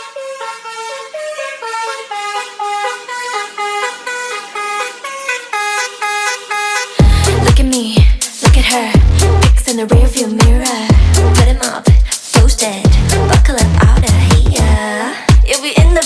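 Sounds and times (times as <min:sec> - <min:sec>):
honking two-note synth tune: 0:00.0 - 0:07.0
dance beat with bass kicks: 0:07.0 - 0:16.0.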